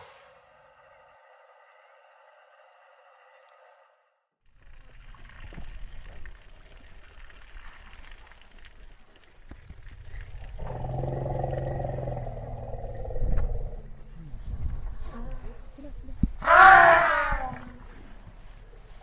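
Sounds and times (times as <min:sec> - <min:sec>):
elephant low call: 0:10.1 - 0:14.0, 0:16.4 - 0:17.8.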